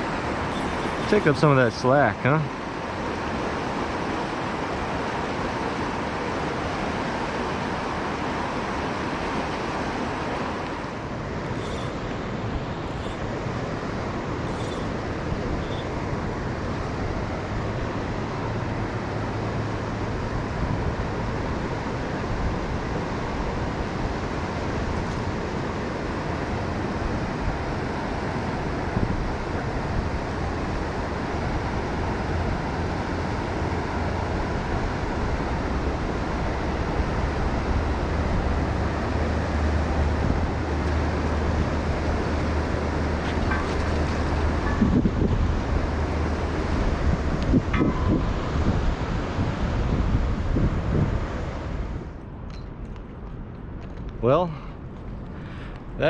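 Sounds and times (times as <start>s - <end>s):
river water rushing: 0.0s - 52.0s
low rumble: 43.3s - 51.0s.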